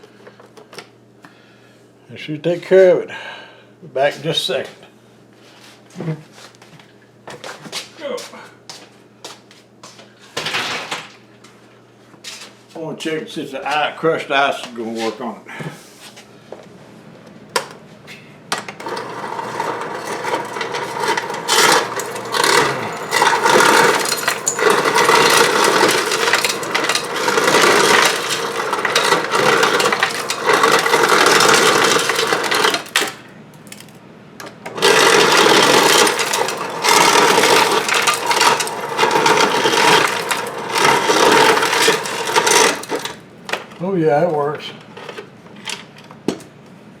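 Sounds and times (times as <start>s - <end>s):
ice dispenser motor humming: 18.6s - 34.0s, 34.6s - 43.2s
crushed ice clattering: 18.8s - 34.0s, 34.7s - 43.2s
ice crusher grinding: 18.8s - 34.0s, 34.7s - 43.2s.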